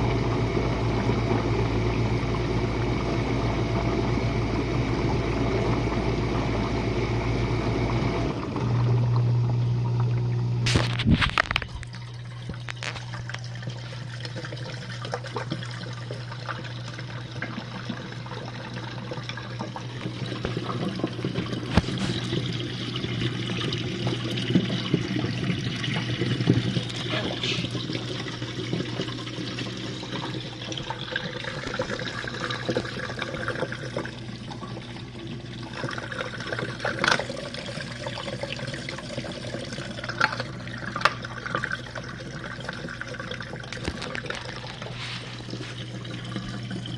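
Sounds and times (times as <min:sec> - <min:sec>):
dishwasher pump humming: 0:00.0 - 0:46.9
water spraying and splashing: 0:21.6 - 0:22.4, 0:43.8 - 0:46.0.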